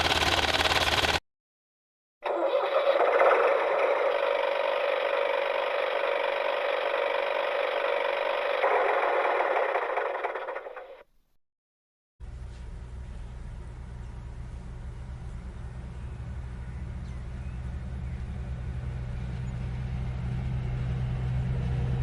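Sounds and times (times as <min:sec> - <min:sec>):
tractor engine running rattly: 0:00.0 - 0:01.2, 0:02.3 - 0:11.1.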